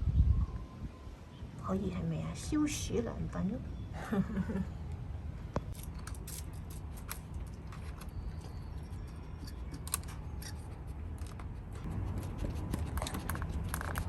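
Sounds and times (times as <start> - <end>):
dog crunching ice: 5.8 - 14.0.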